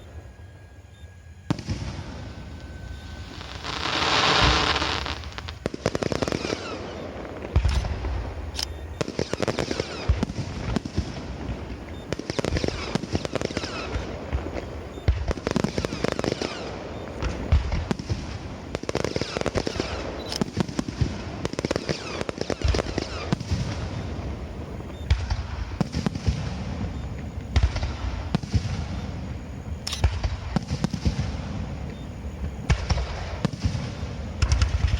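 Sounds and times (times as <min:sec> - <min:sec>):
loud rushing hiss: 0:00.0 - 0:08.5
fireworks crackling: 0:00.0 - 0:34.9
fireworks shells bursting: 0:01.4 - 0:23.9.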